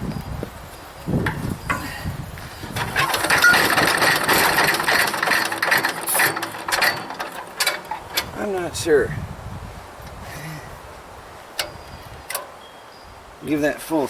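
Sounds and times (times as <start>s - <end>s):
small engine sputtering: 2.6s - 8.4s.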